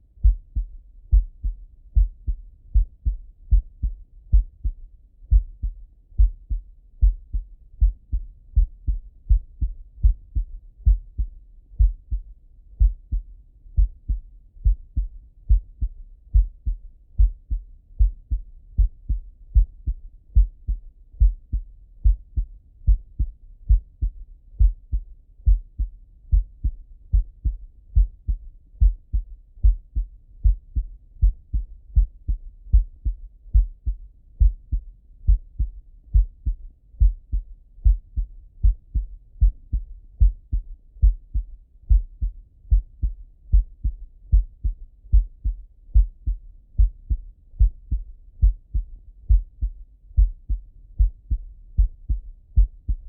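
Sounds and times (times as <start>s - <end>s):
heartbeat through stethoscope: 0.2s - 53.0s.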